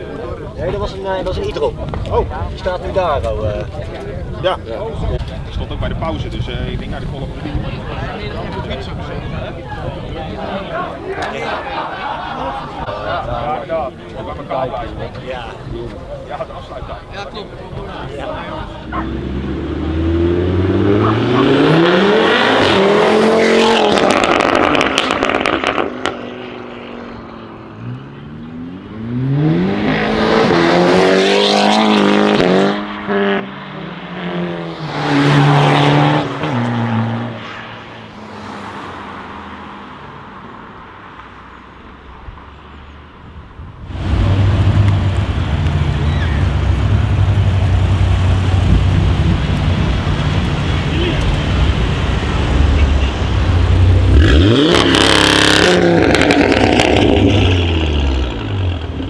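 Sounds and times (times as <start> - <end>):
car engine accelerating hard: 17.8 - 40.2, 43.8 - 59.0
exhaust crackles: 43.8 - 59.0.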